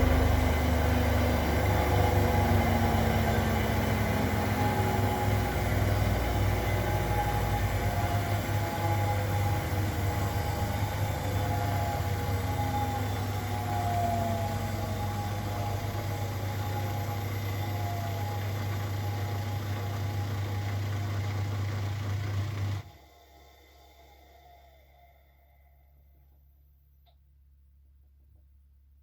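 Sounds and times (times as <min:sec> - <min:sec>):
washing machine spinning: 0:00.0 - 0:22.9.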